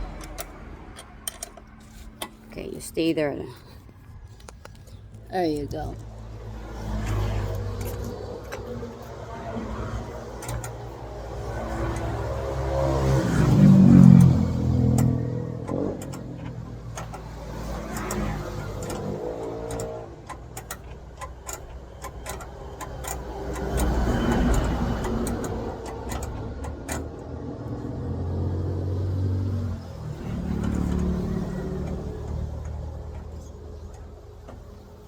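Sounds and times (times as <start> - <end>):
sharp clicks and clinks: 0.0 - 2.4.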